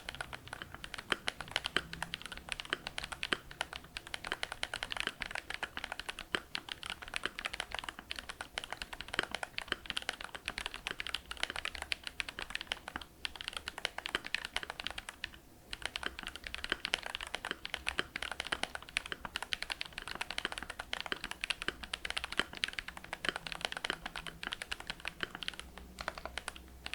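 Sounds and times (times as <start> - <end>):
mechanical keyboard typing: 0.0 - 26.9.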